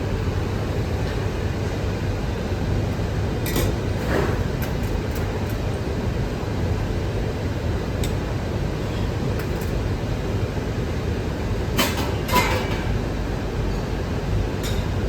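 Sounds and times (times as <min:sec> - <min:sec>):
air conditioning hum: 0:00.0 - 0:15.0
crockery and cutlery clinking: 0:11.8 - 0:12.9.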